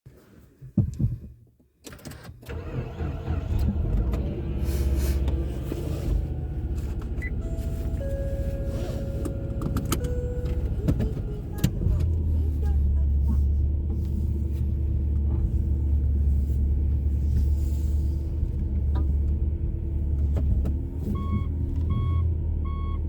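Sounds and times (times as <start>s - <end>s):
car engine starting and running: 1.8s - 23.0s.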